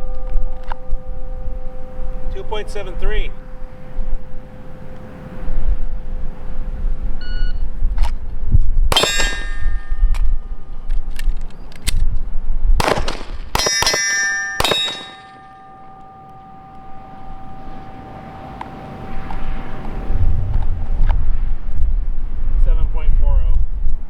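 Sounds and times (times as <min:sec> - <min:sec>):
pistol shots: 0:08.9 - 0:09.9, 0:12.8 - 0:15.5
steel plates clanging: 0:08.9 - 0:10.8, 0:13.6 - 0:17.9.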